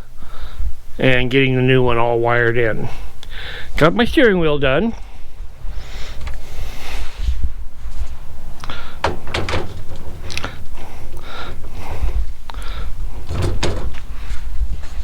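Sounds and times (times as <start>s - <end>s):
sharp knocks and clunks: 8.7s - 14.4s.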